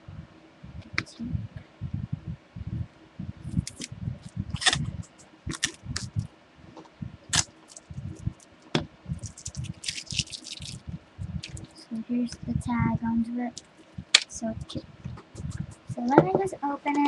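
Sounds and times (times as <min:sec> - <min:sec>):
package crackling: 0:09.2 - 0:10.8.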